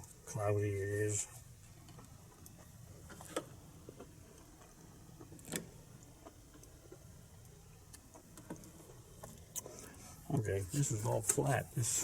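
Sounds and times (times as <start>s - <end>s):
faint clicks and taps: 1.8s - 10.0s.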